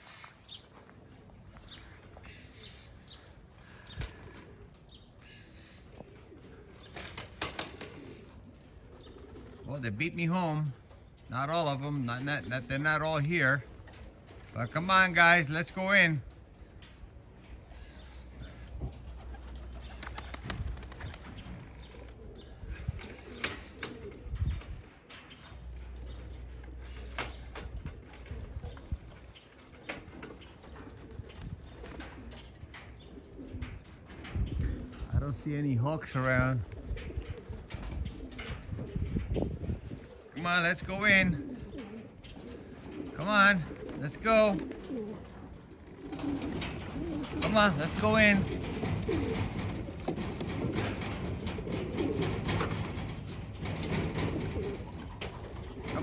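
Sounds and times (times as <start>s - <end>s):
pigeons cooing: 0.0s - 35.8s, 36.4s - 56.0s
birds chirping: 0.0s - 56.0s
wings flapping: 3.8s - 9.7s, 17.7s - 24.9s, 25.5s - 35.1s, 41.4s - 56.0s.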